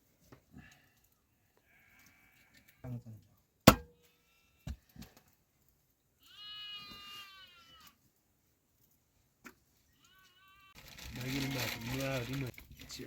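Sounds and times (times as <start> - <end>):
sheep bleating: 6.2 - 8.0, 9.9 - 12.2.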